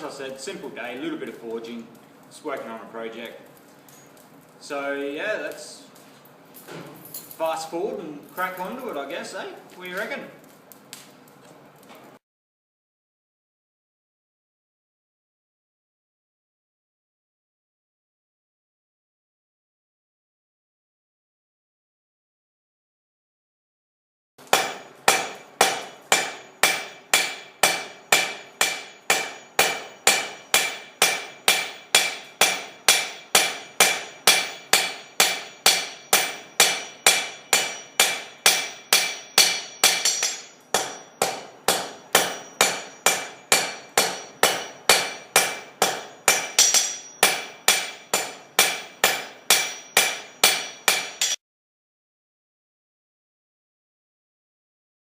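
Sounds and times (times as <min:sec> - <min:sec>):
hammer striking steel on anvil: 0:24.4 - 0:51.4.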